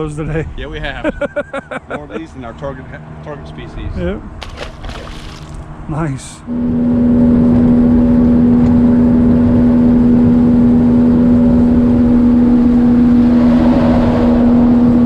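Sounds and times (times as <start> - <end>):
boat motor droning: 6.4 - 15.0.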